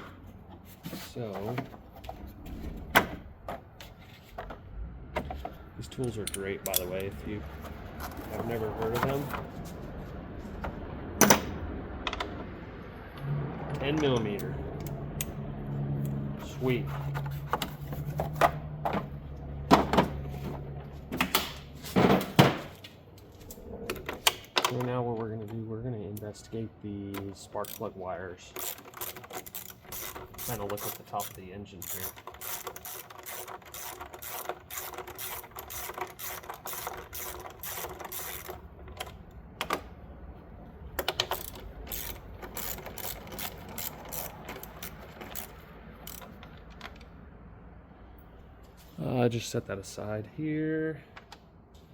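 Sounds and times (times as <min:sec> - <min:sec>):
socket wrench clicks and clunks: 0:05.2 - 0:07.2, 0:11.2 - 0:12.5, 0:40.9 - 0:47.1
socket ratchet clicking: 0:06.0 - 0:07.2, 0:28.5 - 0:39.8, 0:41.0 - 0:47.0.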